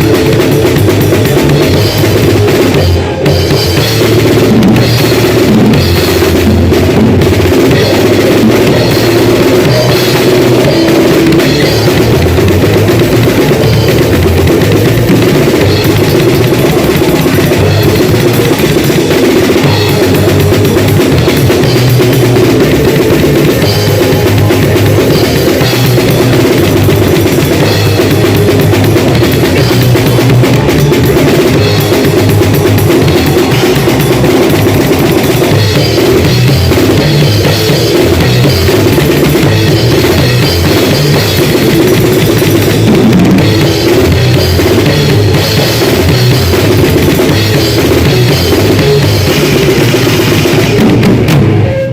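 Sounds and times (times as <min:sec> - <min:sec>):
bass drum: 0:00.0 - 0:51.9
cymbals: 0:00.0 - 0:51.9.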